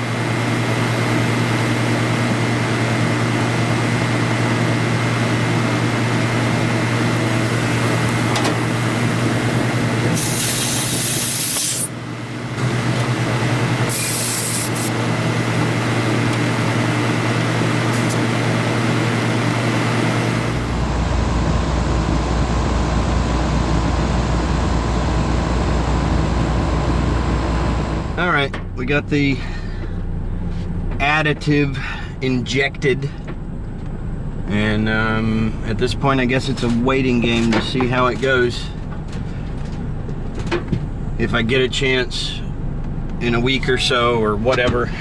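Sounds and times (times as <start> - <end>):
air conditioning unit humming: 0.0 - 21.2, 23.4 - 45.0
gas hissing bursts: 7.3 - 12.0, 13.8 - 15.0, 15.8 - 20.9.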